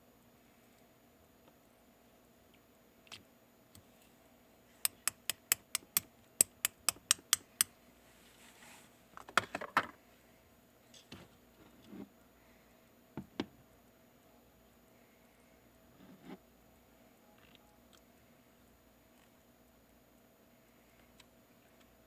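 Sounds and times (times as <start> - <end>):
sharp clicks: 4.9 - 7.7
soft rustle: 8.1 - 9.1.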